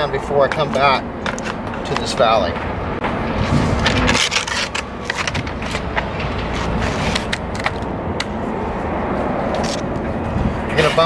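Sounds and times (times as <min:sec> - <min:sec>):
steady low rumble: 0:00.0 - 0:10.8.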